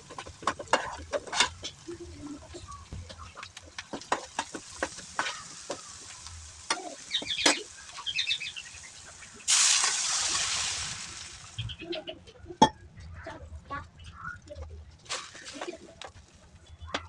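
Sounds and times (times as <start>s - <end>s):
loud sizzle from hot pan: 0.0s - 11.8s
utensil clicking against pan: 3.1s - 7.6s.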